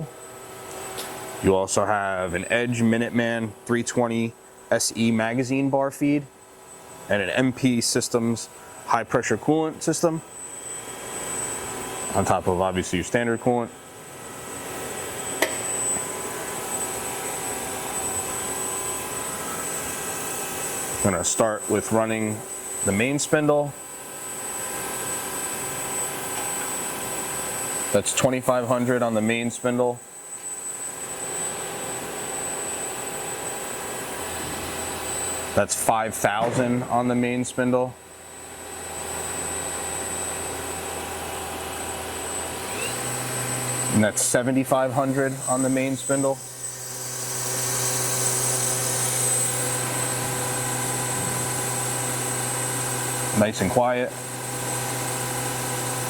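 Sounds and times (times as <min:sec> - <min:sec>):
thin high whine: 0:00.0 - 0:56.0
lathe machine hum: 0:10.3 - 0:12.6, 0:13.7 - 0:23.0, 0:38.0 - 0:56.0.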